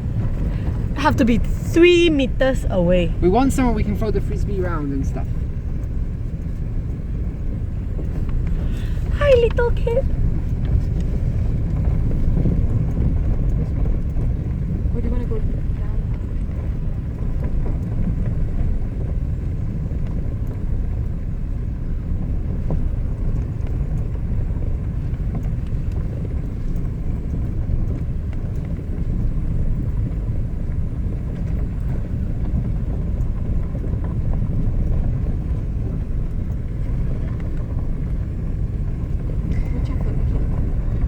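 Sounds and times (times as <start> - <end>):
car road and engine rumble: 0.0 - 41.0.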